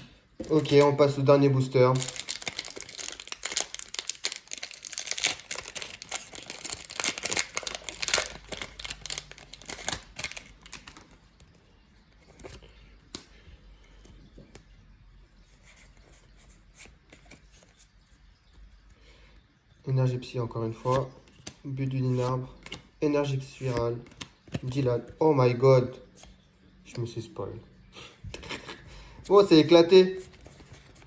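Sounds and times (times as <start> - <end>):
foil wrapper crinkling and tearing: 0.4 - 11.4.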